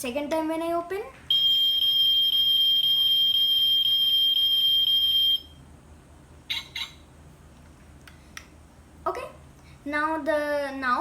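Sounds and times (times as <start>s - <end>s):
high-pitched electronic alarm tone: 1.3s - 5.6s, 6.5s - 7.0s
electronic chirps: 6.5s - 7.0s.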